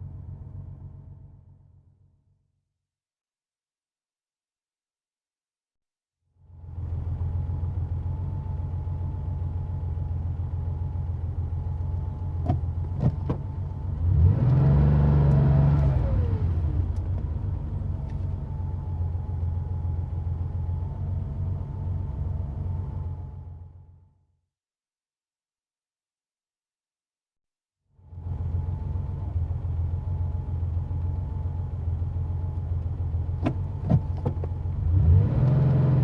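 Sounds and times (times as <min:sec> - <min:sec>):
car engine idling and revving: 0:00.0 - 0:02.4, 0:06.4 - 0:24.1, 0:28.0 - 0:36.0.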